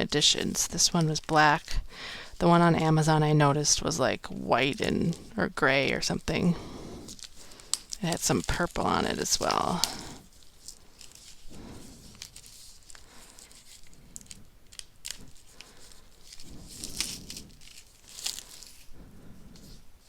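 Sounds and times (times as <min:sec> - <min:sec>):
packaging crinkling and tearing: 0:07.0 - 0:18.9.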